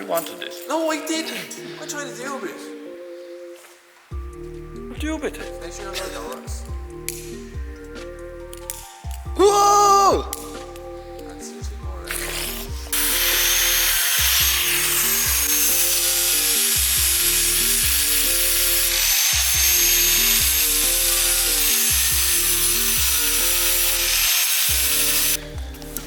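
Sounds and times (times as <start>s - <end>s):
background music with bass line: 4.1s - 26.0s
power sander grinding metal: 12.6s - 25.4s.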